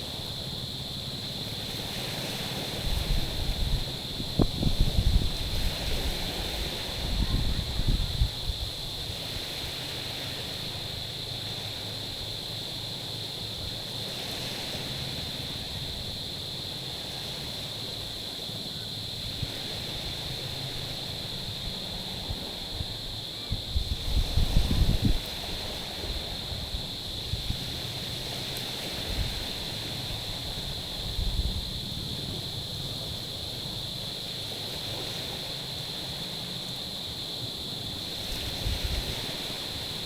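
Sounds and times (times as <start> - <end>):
wind buffeting microphone: 2.8 - 9.0, 22.6 - 27.7.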